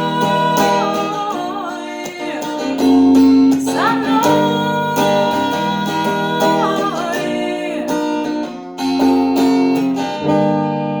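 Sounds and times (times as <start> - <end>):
person singing: 0.0 - 8.6
strummed acoustic guitar: 0.0 - 11.0.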